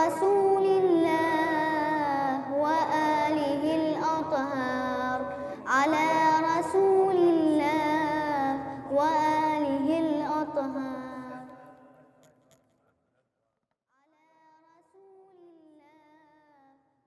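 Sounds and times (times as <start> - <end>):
person chanting melodically: 0.0 - 11.9.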